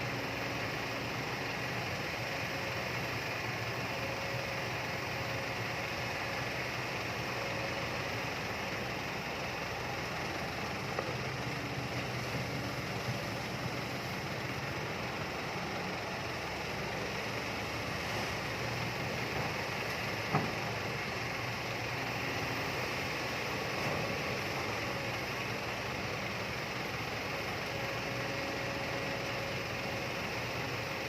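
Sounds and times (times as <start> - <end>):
excavator diesel engine running: 0.0 - 31.0.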